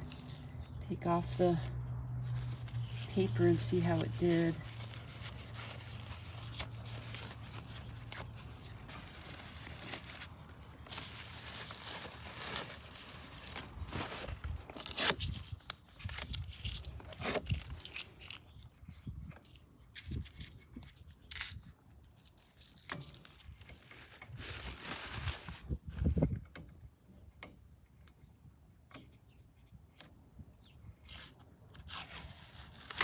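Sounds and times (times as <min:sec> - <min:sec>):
paper tearing and crinkling: 0:00.0 - 0:18.6, 0:20.0 - 0:25.8, 0:31.0 - 0:33.0.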